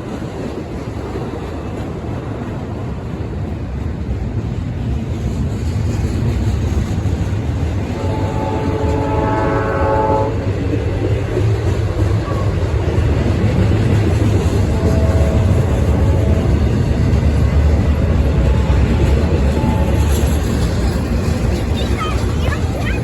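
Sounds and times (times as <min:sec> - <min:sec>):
train rumbling past: 0:00.0 - 0:23.0
locomotive air horn: 0:07.9 - 0:10.4, 0:14.6 - 0:16.8.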